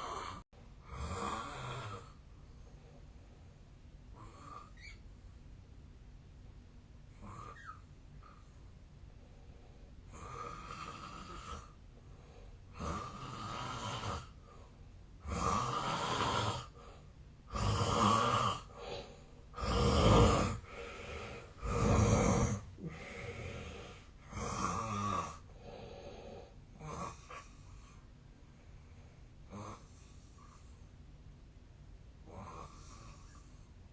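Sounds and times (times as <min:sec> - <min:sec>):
man snoring: 0:00.0 - 0:02.2, 0:10.1 - 0:11.8, 0:12.7 - 0:14.4, 0:15.2 - 0:16.8, 0:17.5 - 0:27.5, 0:29.5 - 0:30.0, 0:32.3 - 0:33.4.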